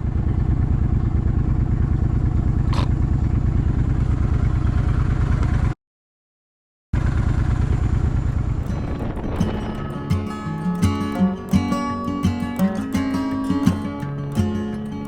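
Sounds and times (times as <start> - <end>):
motorcycle engine idling: 0.0 - 5.7, 7.0 - 9.7.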